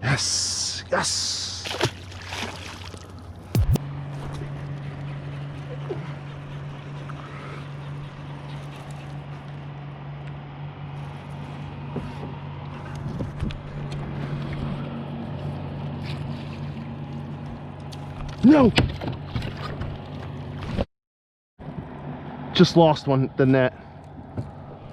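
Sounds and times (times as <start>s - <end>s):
boat motor humming: 0.0s - 20.8s, 23.8s - 24.9s
water splashing: 1.4s - 3.8s.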